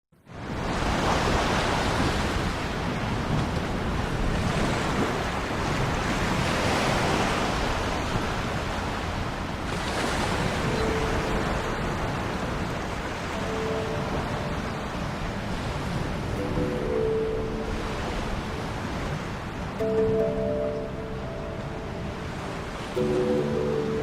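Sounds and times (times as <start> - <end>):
wind on microphone: 0.3 - 23.1
waves breaking on shore: 0.3 - 24.0.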